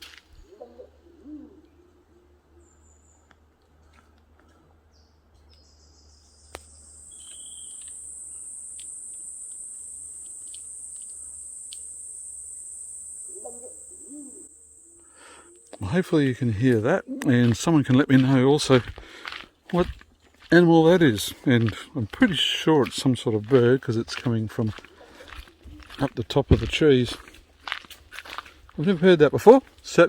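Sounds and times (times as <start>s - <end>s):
high-pitched insect drone: 6.6s - 17.1s
low wavering bird call: 7.0s - 17.3s.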